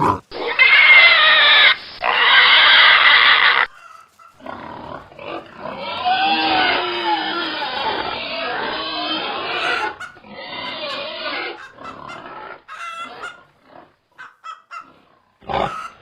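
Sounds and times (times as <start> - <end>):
pig grunts: 0.0 - 1.2, 4.4 - 14.1, 14.8 - 16.0
pigs squealing: 0.0 - 16.0.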